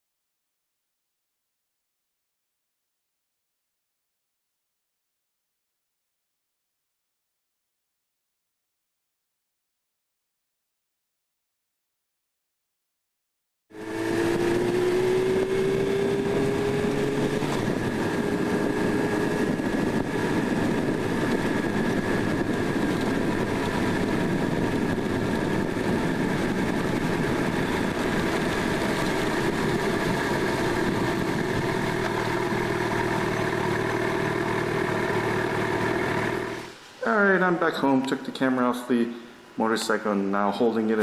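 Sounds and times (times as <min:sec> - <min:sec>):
road and wind noise: 0:13.7 - 0:36.8
motorcycle engine running: 0:13.8 - 0:36.7.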